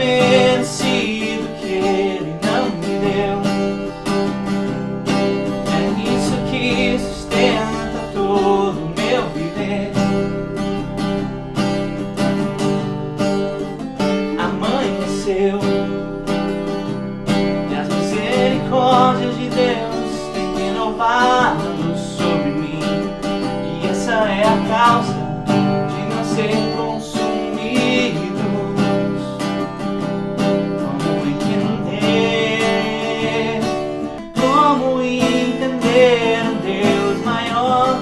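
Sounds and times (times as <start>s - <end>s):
person singing: 0.0s - 3.9s, 5.5s - 10.5s, 14.3s - 16.0s, 17.7s - 29.4s, 30.7s - 38.0s
acoustic guitar strumming chords: 0.0s - 38.0s.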